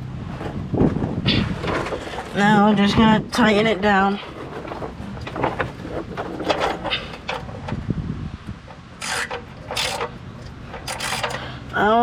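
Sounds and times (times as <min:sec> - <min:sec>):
socket wrench ratcheting: 0:09.0 - 0:11.5.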